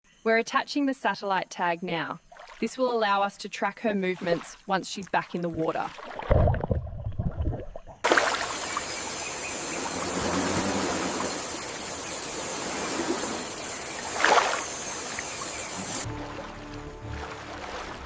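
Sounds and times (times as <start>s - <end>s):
water splash: 5.5s - 18.0s
river water rushing: 8.1s - 18.0s.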